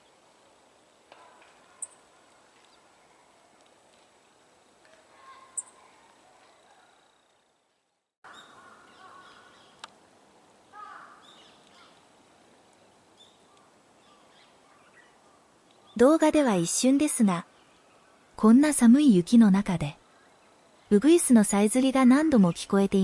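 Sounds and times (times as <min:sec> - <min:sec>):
small birds chirping: 0:01.6 - 0:03.2, 0:04.9 - 0:07.5, 0:08.3 - 0:10.0, 0:10.8 - 0:12.1, 0:12.8 - 0:18.8
crow cawing: 0:08.3 - 0:09.7, 0:10.7 - 0:11.9.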